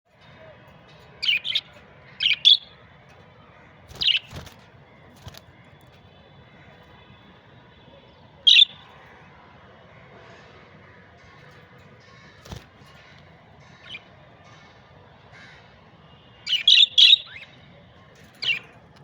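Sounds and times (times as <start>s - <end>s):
budgerigars chirping: 3.9s - 5.5s, 16.5s - 17.5s.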